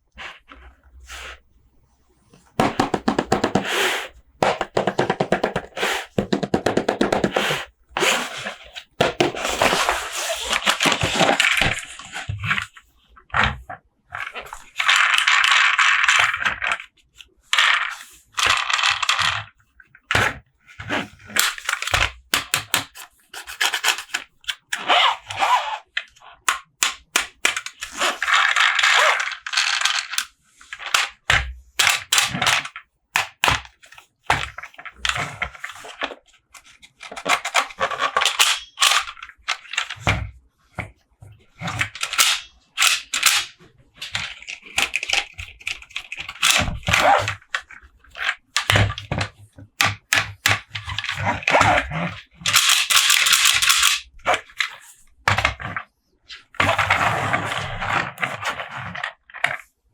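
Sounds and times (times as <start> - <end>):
plastic packaging rubbing and scraping: 2.6 - 12.7, 23.1 - 26.4, 27.7 - 30.9, 55.7 - 59.7.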